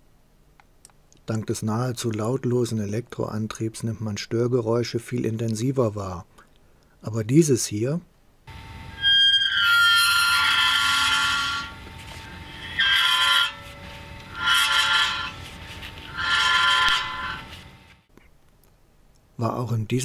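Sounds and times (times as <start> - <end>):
high-pitched metallic wheel squeal: 8.5 - 17.6.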